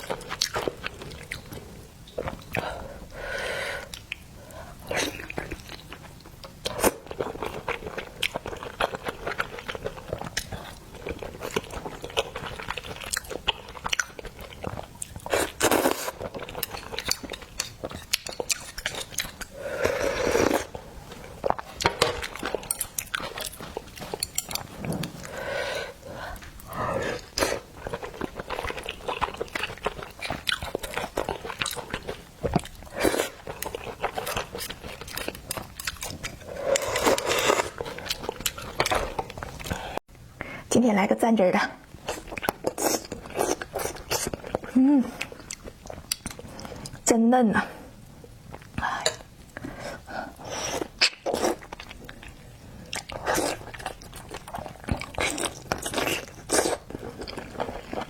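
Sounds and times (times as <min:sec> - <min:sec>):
chewing and biting oysters: 0:05.0 - 0:19.6, 0:20.5 - 0:40.0, 0:50.3 - 0:58.0.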